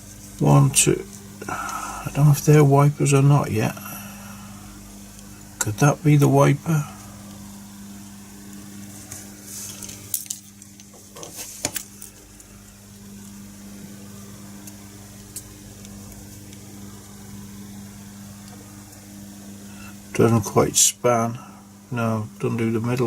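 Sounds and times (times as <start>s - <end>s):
steady low hum: 0.0s - 23.0s
small parts clicking and scraping: 9.0s - 12.5s.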